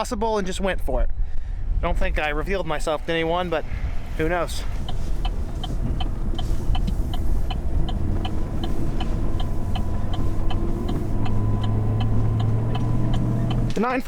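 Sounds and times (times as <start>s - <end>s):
vehicle engine running: 4.2s - 13.8s
regular ticking: 4.2s - 13.9s.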